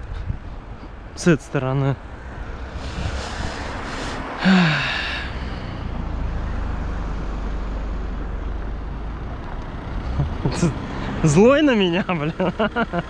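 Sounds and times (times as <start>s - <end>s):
person sighing: 2.9s - 5.8s.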